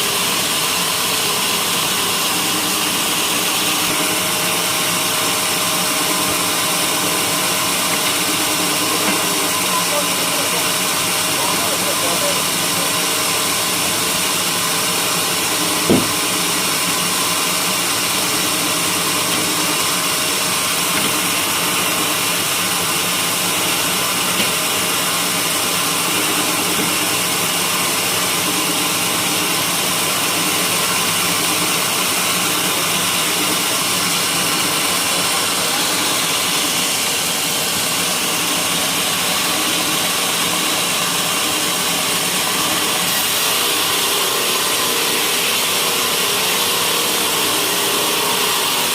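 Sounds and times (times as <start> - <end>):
sawmill machinery droning: 0.0 - 48.9
short knock: 15.9 - 16.2.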